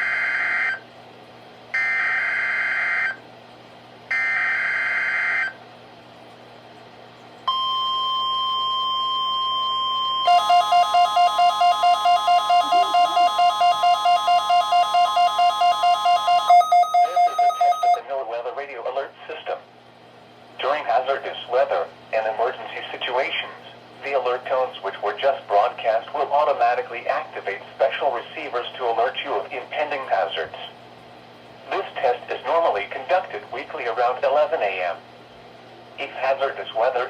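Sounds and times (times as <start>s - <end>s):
steady warning alarm tone: 0.0s - 0.8s, 1.8s - 3.2s, 4.1s - 5.6s, 7.5s - 18.0s
rapidly pulsing beep: 7.5s - 18.0s
harsh digital data bursts: 10.3s - 18.0s.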